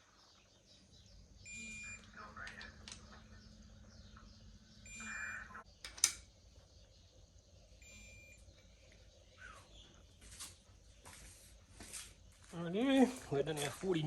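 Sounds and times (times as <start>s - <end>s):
sharp metallic click: 5.8s - 6.3s.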